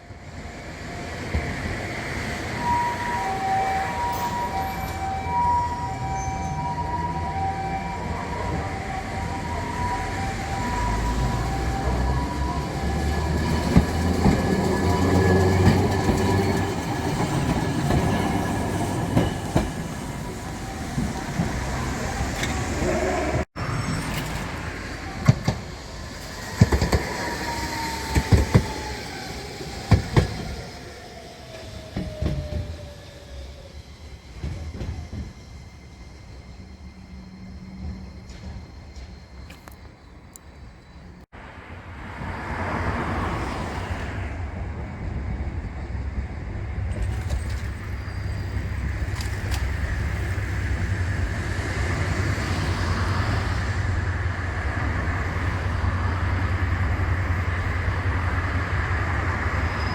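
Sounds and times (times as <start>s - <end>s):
two-tone crossing warning signal: 0.0s - 30.6s
low rail rumble: 0.0s - 59.9s.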